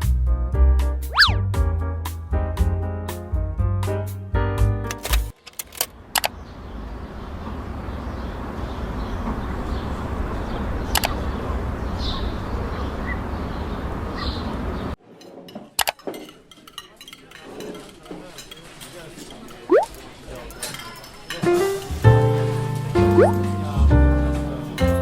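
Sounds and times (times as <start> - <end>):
sharp clicks: 4.9 - 6.4, 10.9 - 11.2.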